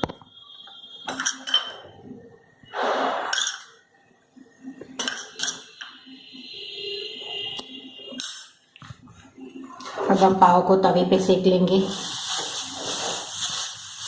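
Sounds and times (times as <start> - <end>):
metal spoon clinking on dish: 1.0 - 1.8, 3.3 - 3.8, 4.9 - 5.8.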